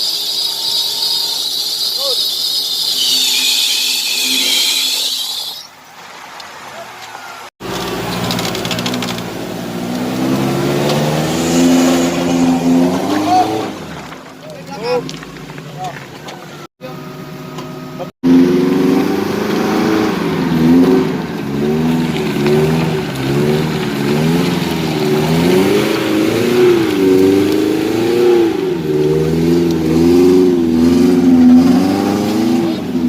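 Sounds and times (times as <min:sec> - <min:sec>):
engine revving: 0:07.6 - 0:14.1, 0:17.9 - 0:33.0.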